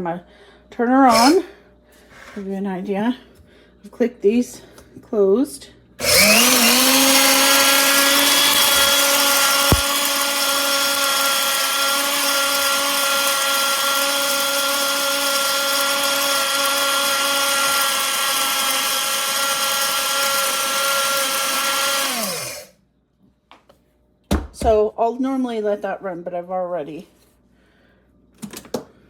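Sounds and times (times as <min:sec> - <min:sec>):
grain mill motor whine: 0:06.0 - 0:22.7.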